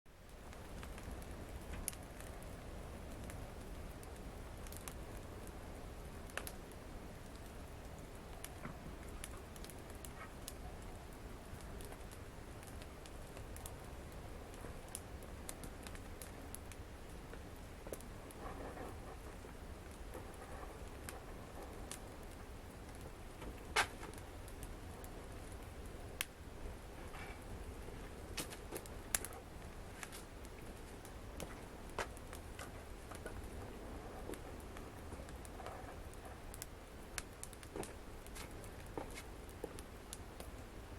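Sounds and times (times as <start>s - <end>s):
faint low rumble: 0.1s - 40.9s
wood fire crackling: 0.1s - 40.9s.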